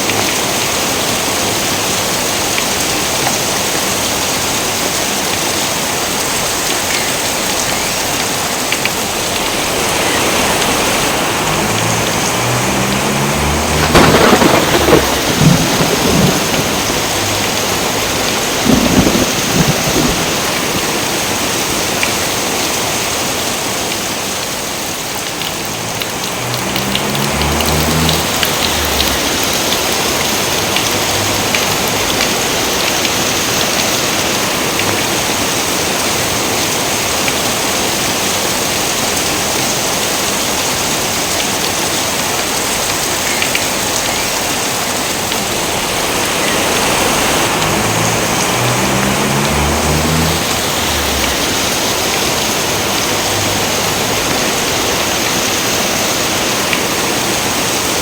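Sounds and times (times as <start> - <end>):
heavy rain: 0.0 - 58.0
thunder rumbling: 9.0 - 21.5, 25.4 - 32.7, 43.6 - 54.9.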